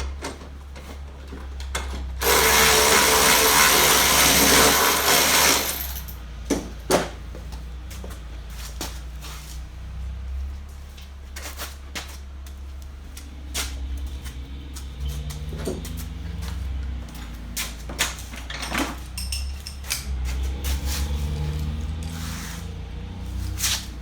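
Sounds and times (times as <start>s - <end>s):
hand tools clattering on metal: 17.1s - 20.4s.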